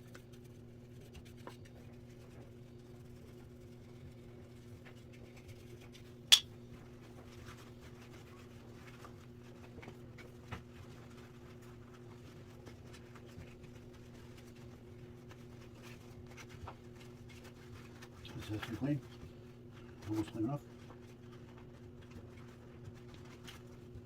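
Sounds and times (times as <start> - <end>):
rubbing and handling sounds: 0.0 - 24.0
steady low hum: 0.0 - 24.0.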